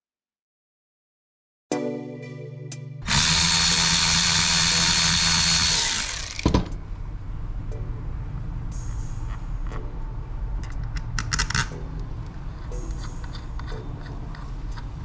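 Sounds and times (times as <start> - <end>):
power drill running: 3.0 - 6.7.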